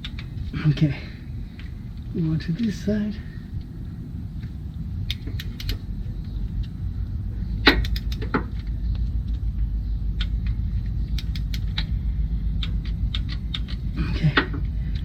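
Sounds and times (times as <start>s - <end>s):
low steady rumble: 0.0s - 15.0s
socket wrench clicking: 5.1s - 5.9s, 7.6s - 8.7s, 10.1s - 12.0s.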